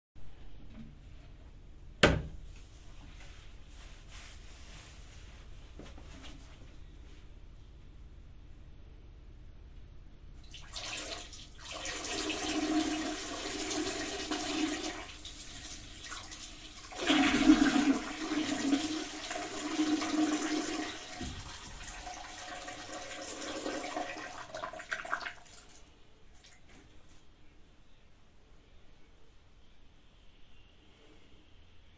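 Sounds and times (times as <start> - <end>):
man urinating into toilet water: 10.4 - 26.7.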